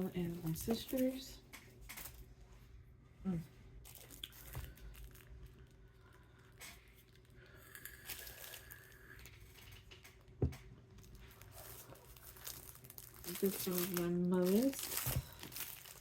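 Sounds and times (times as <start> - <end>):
plastic packaging crinkling: 0.2 - 1.3, 3.8 - 10.3, 11.0 - 16.0.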